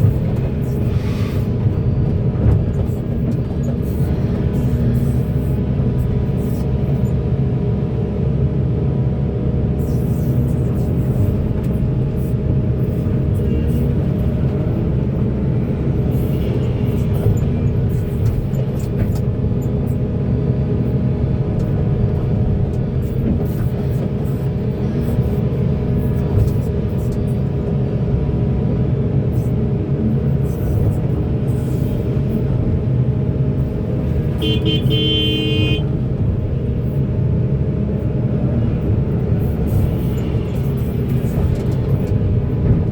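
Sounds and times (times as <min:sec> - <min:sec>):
excavator diesel engine droning: 0:27.4 - 0:42.9.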